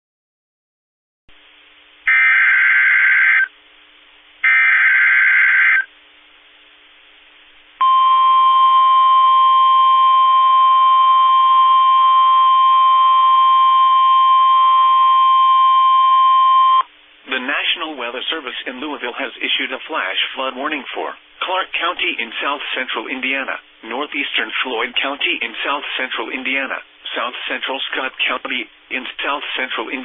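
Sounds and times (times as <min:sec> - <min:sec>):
harsh digital data warble: 0:02.1 - 0:03.5, 0:04.5 - 0:05.9
steady warning alarm tone: 0:02.1 - 0:03.5, 0:04.4 - 0:05.9.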